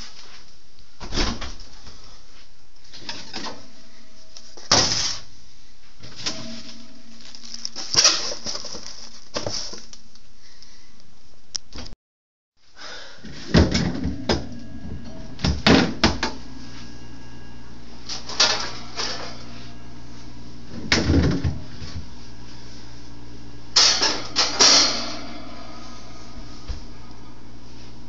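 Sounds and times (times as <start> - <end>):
steady low hum: 1.7 - 9.3, 12.6 - 28.0.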